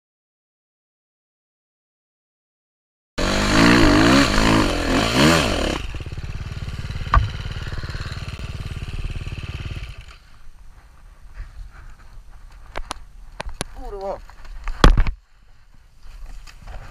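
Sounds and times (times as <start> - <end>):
motorcycle engine revving: 3.2 - 10.4.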